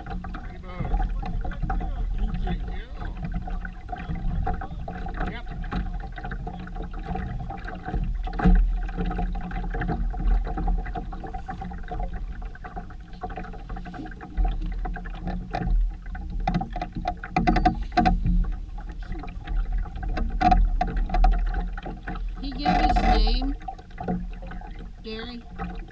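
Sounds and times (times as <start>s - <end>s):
low rumble with hum: 0.0s - 25.9s
clicks and knocks: 14.4s - 18.6s.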